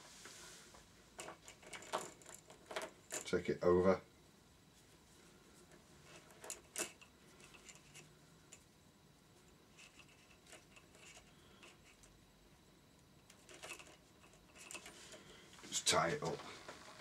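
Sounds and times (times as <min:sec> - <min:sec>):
chain clicking and rubbing: 0:01.2 - 0:03.4, 0:06.0 - 0:08.6, 0:09.7 - 0:12.2, 0:13.2 - 0:15.1.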